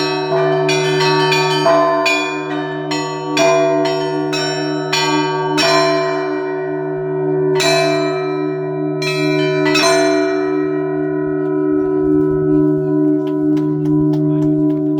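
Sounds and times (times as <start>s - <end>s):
church bells striking: 0.0s - 14.9s
deep hum of large bell: 0.0s - 14.9s.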